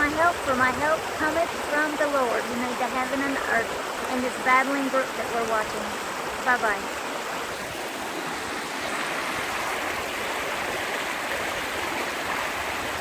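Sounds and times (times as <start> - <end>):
brook babbling over rocks: 0.0 - 13.0.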